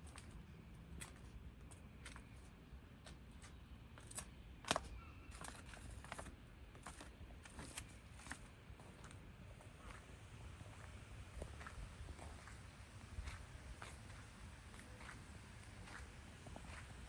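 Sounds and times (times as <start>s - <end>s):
footsteps crunching on snow: 9.8s - 17.0s.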